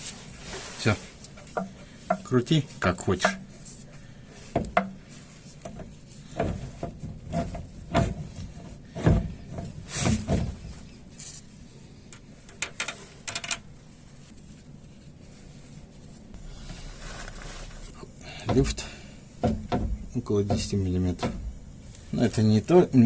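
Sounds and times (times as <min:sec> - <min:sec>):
metal clunks and knocks: 0:05.7 - 0:10.9, 0:16.4 - 0:21.9.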